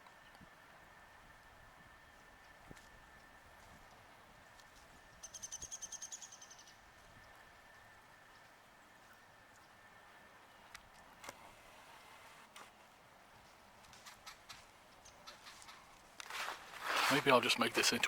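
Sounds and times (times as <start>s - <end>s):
songbird trilling: 5.2s - 6.8s.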